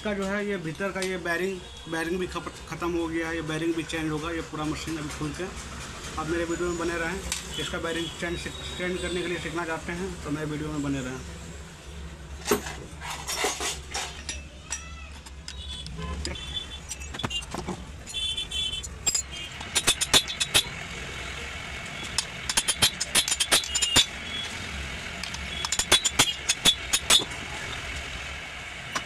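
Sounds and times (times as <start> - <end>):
traffic hum: 0.0 - 29.0
hand tools clicking on metal: 12.6 - 18.2, 18.8 - 20.8, 22.0 - 24.2, 25.2 - 27.4.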